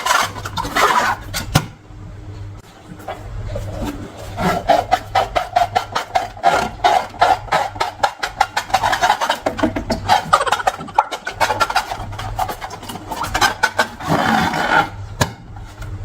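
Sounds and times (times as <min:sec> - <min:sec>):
rubber balloon squeaking: 0:03.5 - 0:15.0.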